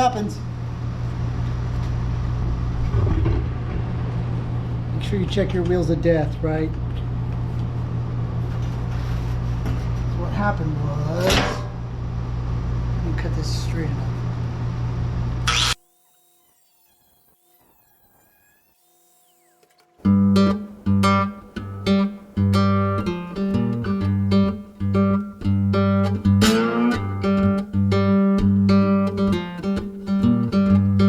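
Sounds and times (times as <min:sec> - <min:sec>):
bass line: 0:20.0 - 0:31.0
strummed acoustic guitar music: 0:20.0 - 0:31.0.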